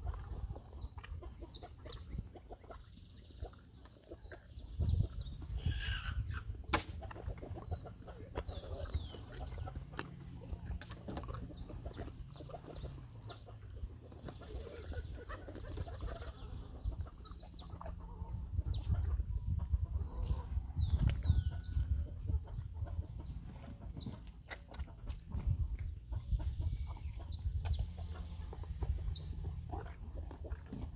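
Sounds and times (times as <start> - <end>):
birds chirping: 0.0 - 30.9
donkey chewing: 7.3 - 15.0, 27.6 - 30.9.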